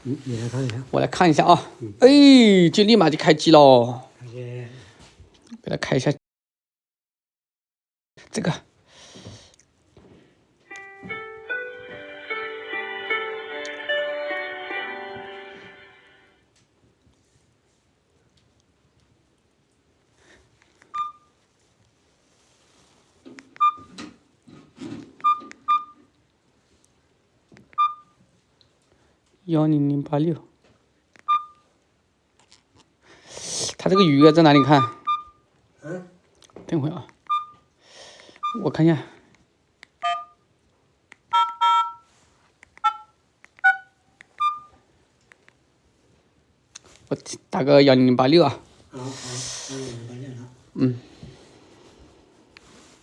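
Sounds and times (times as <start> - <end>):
phone keypad beeps: 21.0 - 21.2, 23.6 - 23.9, 25.2 - 26.0, 27.8 - 28.1, 31.3 - 31.6, 34.0 - 35.3, 40.0 - 40.4, 42.8 - 44.7.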